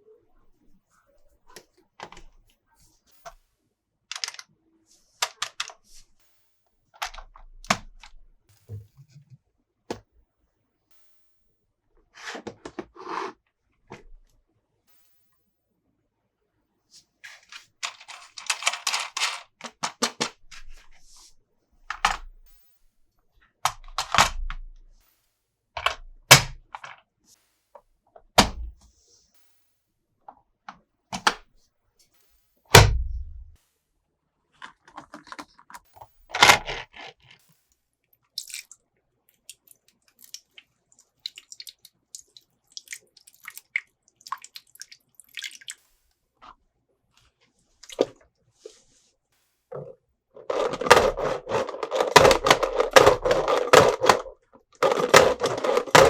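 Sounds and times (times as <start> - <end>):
plastic toy pieces clattering: 4.1 - 4.4, 17.3 - 20.3, 34.6 - 37.3, 50.4 - 56.0.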